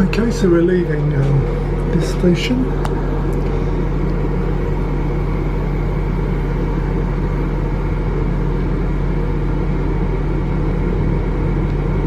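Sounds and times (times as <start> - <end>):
train rumbling from inside carriage: 0.0 - 2.8.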